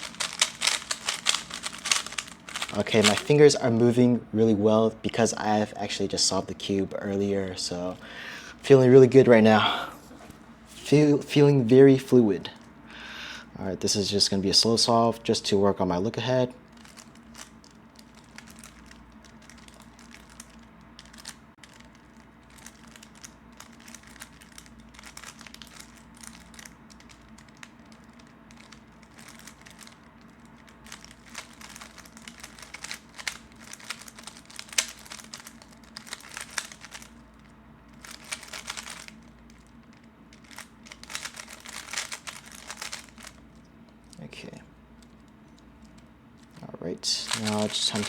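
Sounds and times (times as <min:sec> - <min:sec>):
plastic puzzle cube clicking: 0:00.0 - 0:03.3, 0:30.9 - 0:37.1, 0:38.0 - 0:39.7, 0:40.4 - 0:43.3.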